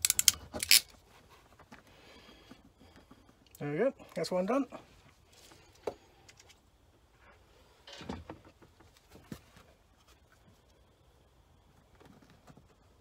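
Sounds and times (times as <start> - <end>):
small parts clicking and knocking: 0.0 - 1.0.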